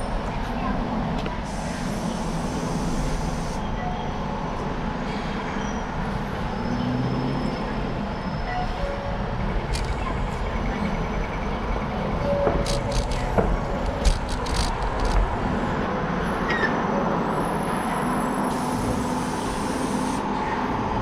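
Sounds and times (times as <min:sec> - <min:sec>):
street traffic rumble: 0:00.0 - 0:21.0
sharp clicks and knocks: 0:12.4 - 0:15.3.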